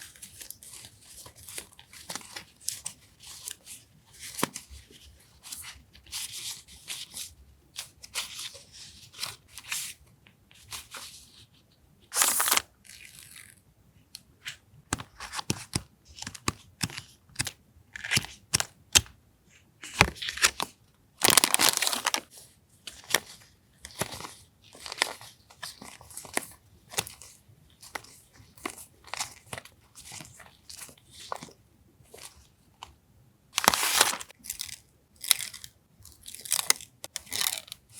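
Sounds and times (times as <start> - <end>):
paper rustling and crinkling: 0.0 - 11.5, 12.1 - 13.6, 19.8 - 32.5, 33.6 - 34.4.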